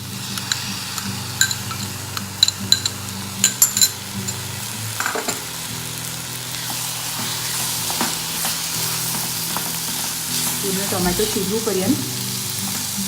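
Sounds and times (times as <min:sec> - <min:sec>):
tomatoes sizzling in hot oil: 0:00.0 - 0:13.0
spoon clinking against pan: 0:00.3 - 0:05.5.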